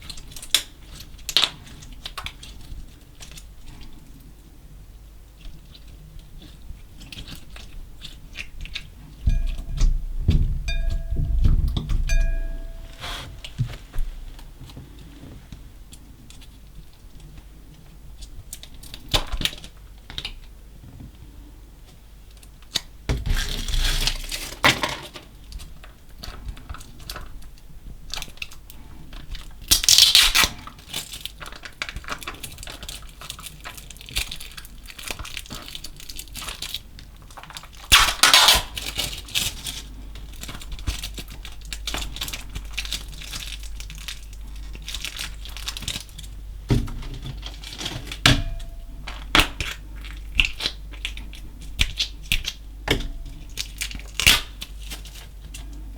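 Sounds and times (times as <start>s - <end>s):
slime squishing and crackling: 29.3s - 55.6s.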